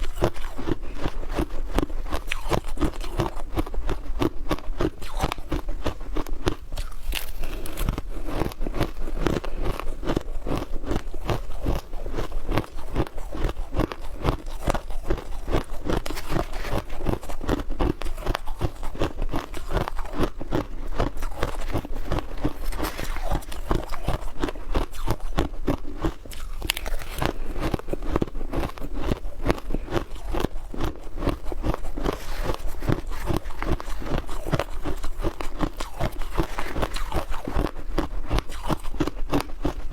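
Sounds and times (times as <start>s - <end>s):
ice being chewed: 0.0s - 39.9s.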